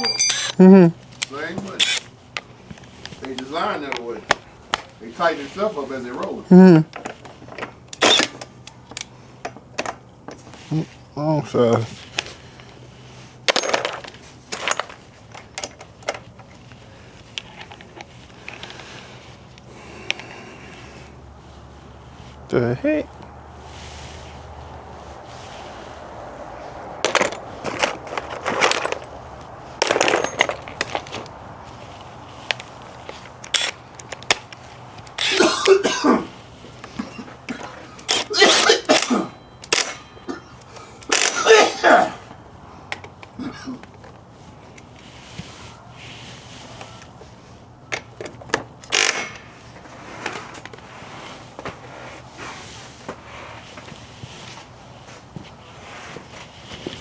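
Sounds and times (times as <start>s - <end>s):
metal tools clinking: 0.0s - 0.7s, 8.0s - 8.5s, 13.5s - 15.0s, 27.0s - 29.2s, 29.8s - 31.1s, 33.5s - 34.2s.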